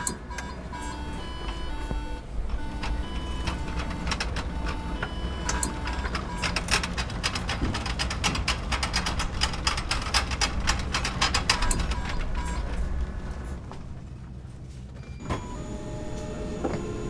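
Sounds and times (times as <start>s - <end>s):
rapid mechanical clicking: 2.4s - 12.9s.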